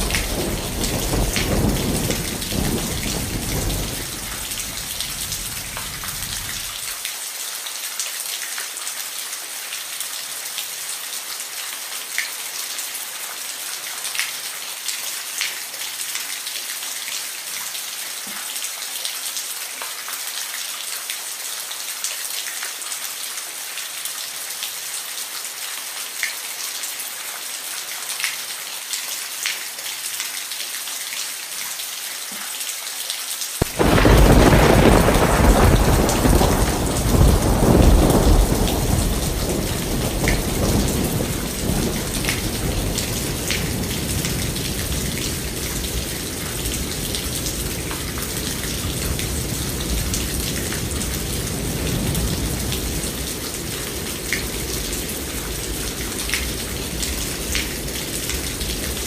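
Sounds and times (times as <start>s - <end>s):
thunder rumbling: 0.0s - 6.9s, 33.6s - 59.0s
steady rain: 0.0s - 59.0s.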